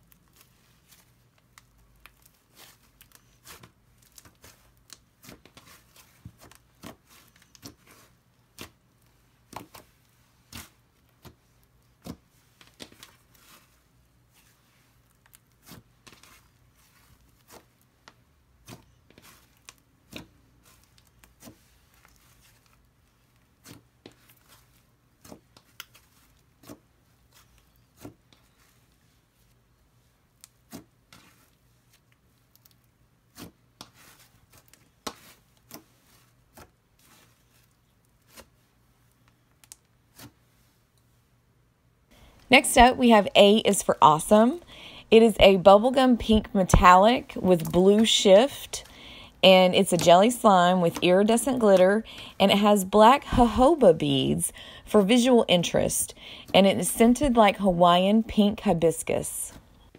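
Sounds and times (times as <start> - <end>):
hands squishing slime: 0.2 - 29.1, 30.3 - 40.6.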